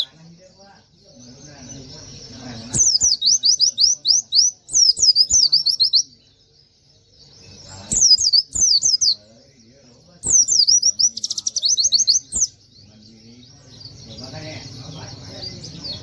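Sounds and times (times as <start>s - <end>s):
small bird singing: 0.0s - 16.0s.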